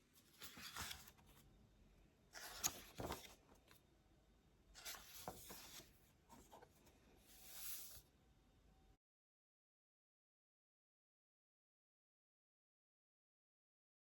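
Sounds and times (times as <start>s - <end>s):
scratching and rustling on paper: 0.2s - 1.4s, 2.4s - 3.8s, 4.8s - 8.0s.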